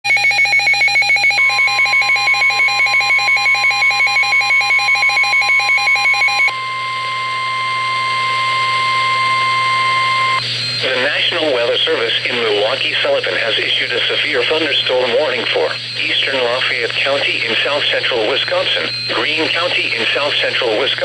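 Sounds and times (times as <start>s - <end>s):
steady warning alarm tone: 0.1s - 21.0s
rapid pulsing electronic beeps: 12.9s - 21.0s.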